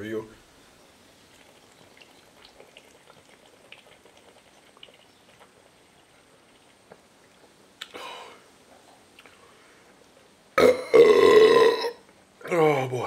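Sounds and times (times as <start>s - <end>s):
man gulping drink: 1.3s - 12.1s
can click and hiss: 7.8s - 8.0s.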